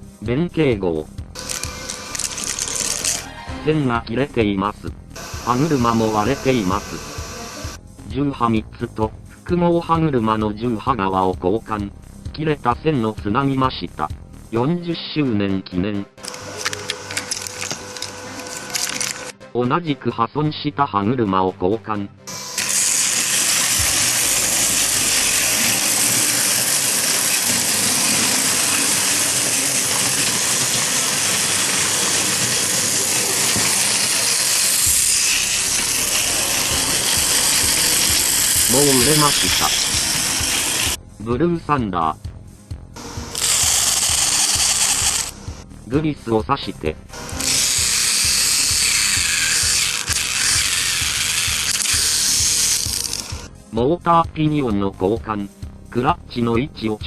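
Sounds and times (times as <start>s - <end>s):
toy train motor whirring: 1.4s - 3.3s, 5.2s - 7.8s, 16.2s - 19.3s, 22.3s - 41.0s, 43.0s - 45.6s, 47.2s - 53.5s.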